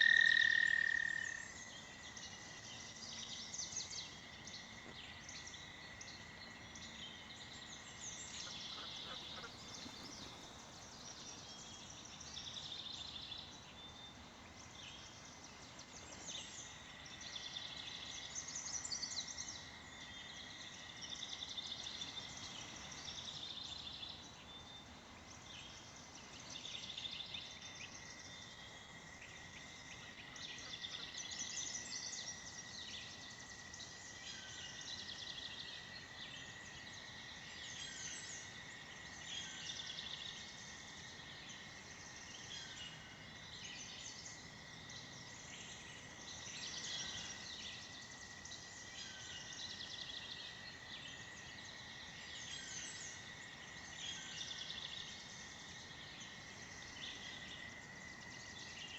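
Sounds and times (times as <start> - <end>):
toad trilling: 0.0 - 1.4
small birds chirping: 7.1 - 12.7.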